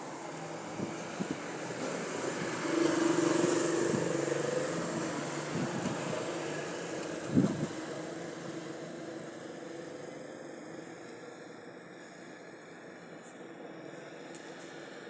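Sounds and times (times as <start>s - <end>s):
vehicle engine passing: 1.8s - 8.4s.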